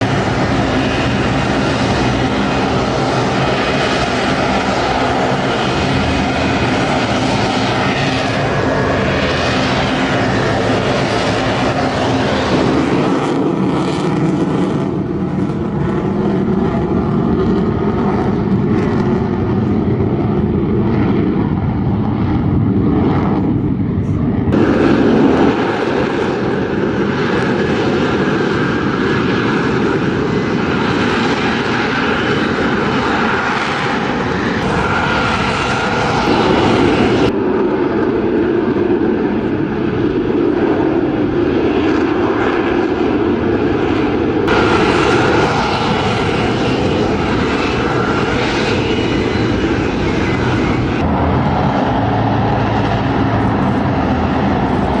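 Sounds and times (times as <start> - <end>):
faint jet whine: 0.0 - 55.0
jet engine roar: 0.0 - 55.0.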